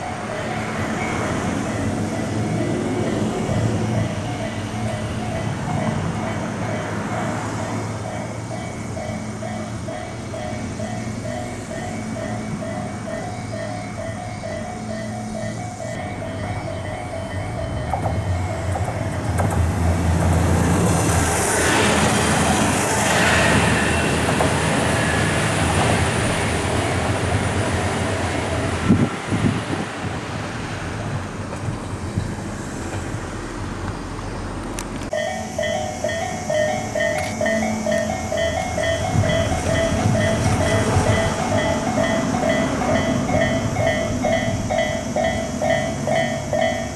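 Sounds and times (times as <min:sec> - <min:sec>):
railroad crossing alarm ringing: 0:00.0 - 0:46.9
train rumble and wheel noise: 0:00.0 - 0:46.9.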